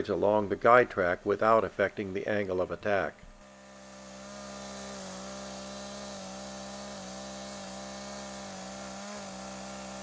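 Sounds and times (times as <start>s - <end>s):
chainsaw cutting through log: 3.4s - 10.0s.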